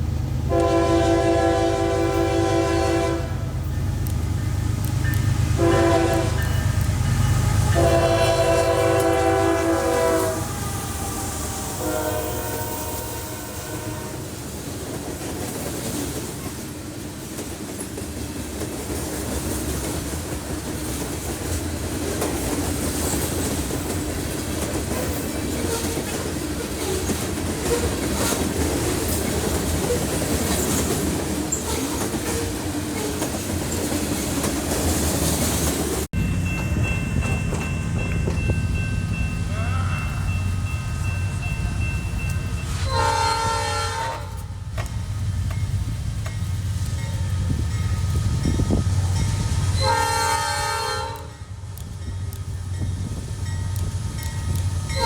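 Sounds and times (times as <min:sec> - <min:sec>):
locomotive rumble: 0:00.0 - 0:55.0
train wheels rolling on rails: 0:00.0 - 0:55.0
train horn blowing: 0:00.5 - 0:03.6, 0:05.6 - 0:06.6, 0:07.2 - 0:14.4, 0:42.7 - 0:44.5, 0:49.8 - 0:51.6.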